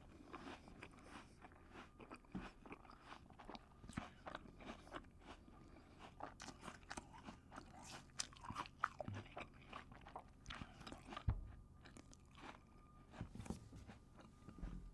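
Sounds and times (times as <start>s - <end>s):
apple being bitten and chewed: 0.1s - 14.8s.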